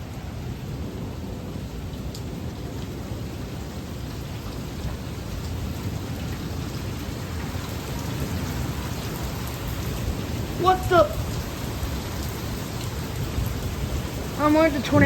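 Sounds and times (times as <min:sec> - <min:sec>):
heavy rain pouring: 0:00.0 - 0:15.0
low thunder rumble: 0:09.7 - 0:15.0.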